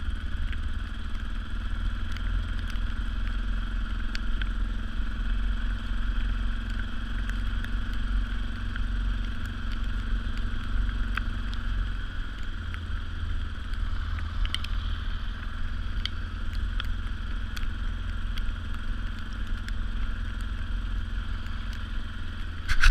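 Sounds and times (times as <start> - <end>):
atv engine rumbling: 0.0 - 22.9
sharp ticks: 12.4 - 22.0.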